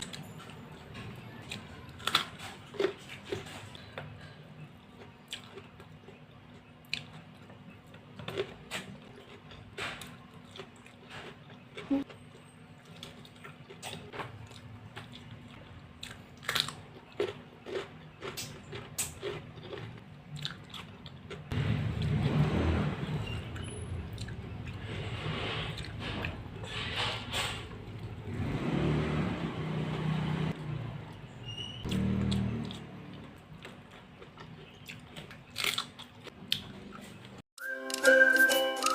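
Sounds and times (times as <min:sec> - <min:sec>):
crunching chili peppers: 0:00.0 - 0:22.2, 0:31.4 - 0:37.4
person chewing: 0:01.2 - 0:22.2, 0:24.1 - 0:24.9, 0:31.9 - 0:37.4.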